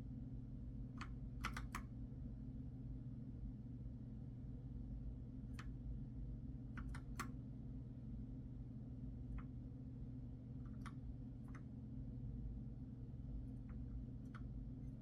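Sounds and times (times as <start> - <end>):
steady low hum: 0.0 - 15.0
keyboard key clicks: 1.0 - 1.9, 6.8 - 7.3.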